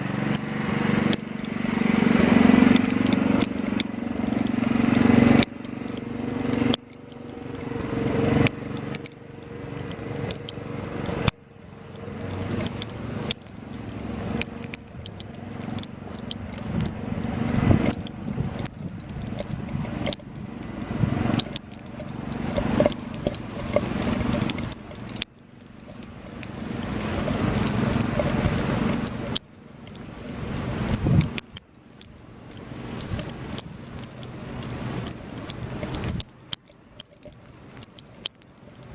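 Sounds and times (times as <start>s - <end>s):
vehicles passing in snow: 0.0s - 14.8s, 16.7s - 18.5s, 19.6s - 24.8s, 26.2s - 31.4s.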